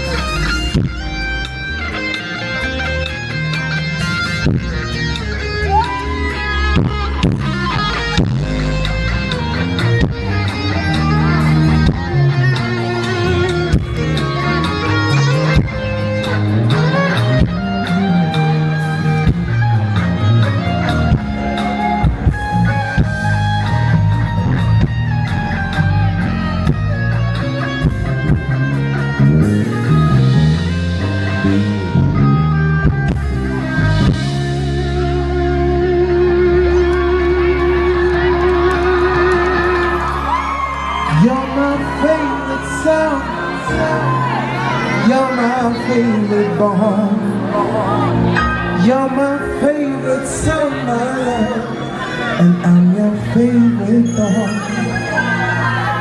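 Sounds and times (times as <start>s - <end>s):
drum kit: 0.0s - 32.1s
bass guitar: 0.0s - 56.0s
electric guitar: 0.0s - 56.0s.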